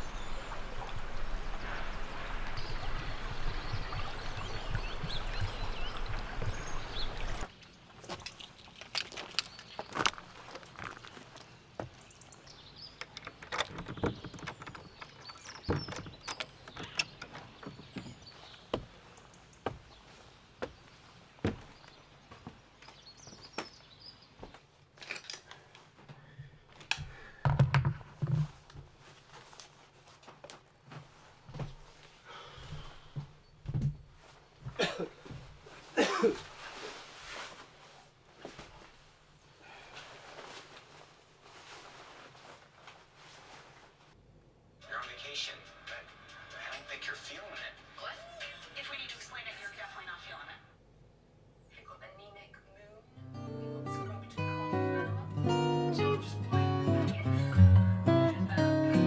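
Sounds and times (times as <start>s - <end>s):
stream water rushing: 0.0s - 7.5s
sharp clicks and light knocks: 12.8s - 18.9s.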